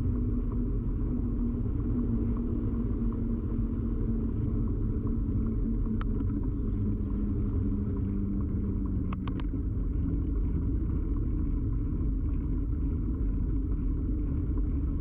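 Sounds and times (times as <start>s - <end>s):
faint light ticks: 5.0s - 6.8s, 8.8s - 9.6s.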